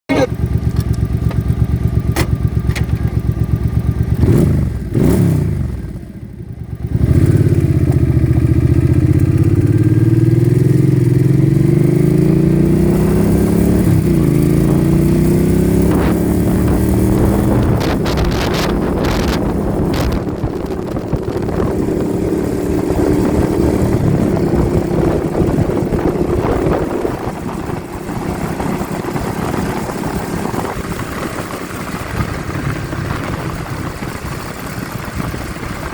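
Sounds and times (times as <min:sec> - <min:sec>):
motorcycle engine accelerating: 0:00.1 - 0:35.9
wind buffeting microphone: 0:12.3 - 0:35.9
sharp crackles: 0:16.0 - 0:21.4, 0:29.8 - 0:35.9.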